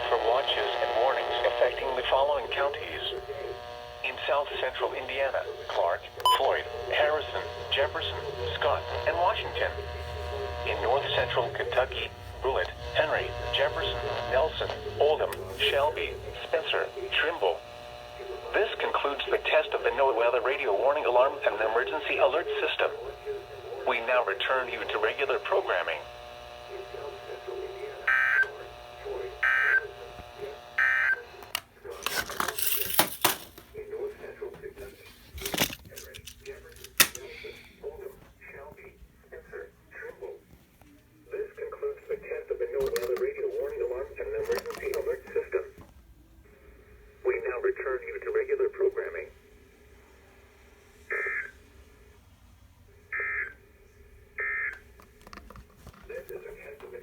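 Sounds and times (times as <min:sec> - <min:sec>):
buzzy digital data bursts: 0:00.0 - 0:31.4
faint steady hum: 0:00.0 - 0:57.0.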